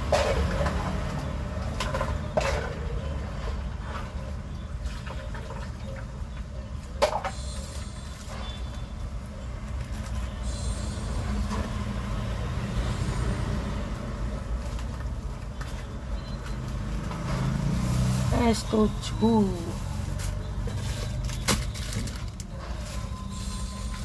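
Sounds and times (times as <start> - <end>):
vehicle engine running: 0.0 - 24.0.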